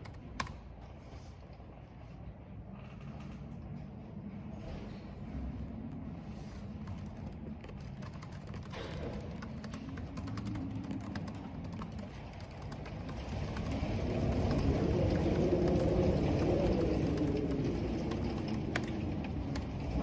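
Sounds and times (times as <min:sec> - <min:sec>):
wind: 0:00.0 - 0:20.0
computer keyboard typing: 0:06.8 - 0:19.7
rain: 0:10.3 - 0:20.0.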